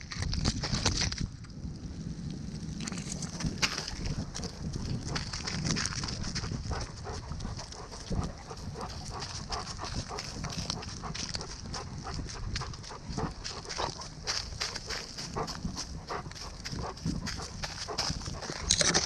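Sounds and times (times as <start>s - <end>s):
dog breathing: 3.9s - 19.0s
quick clicks and rustles: 17.6s - 19.0s.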